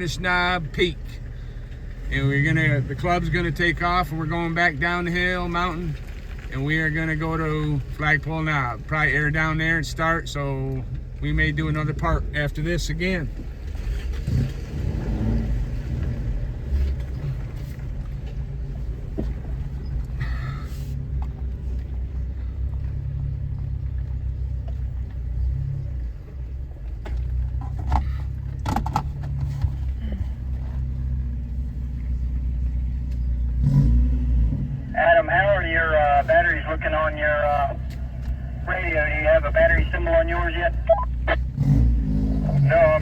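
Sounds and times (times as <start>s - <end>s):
vehicle engine and road rumble: 0.0s - 43.0s.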